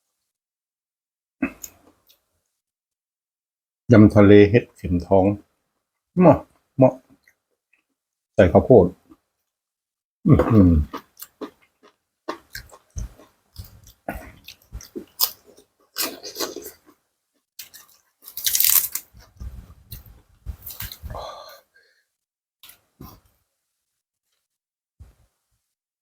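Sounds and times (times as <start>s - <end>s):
crunchy chewing: 17.6s - 21.0s.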